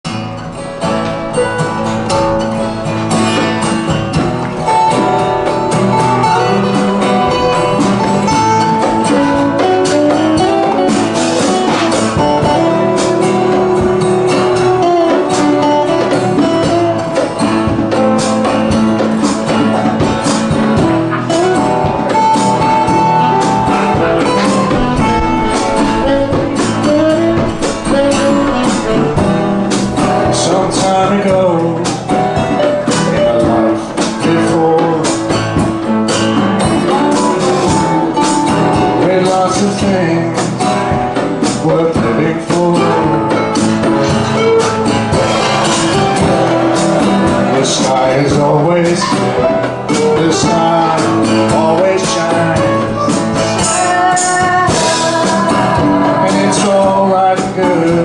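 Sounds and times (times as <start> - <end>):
strummed guitar: 0.0 - 58.0
sliding melodic lead line: 0.1 - 18.9, 20.8 - 40.3
percussion beat: 0.1 - 58.0.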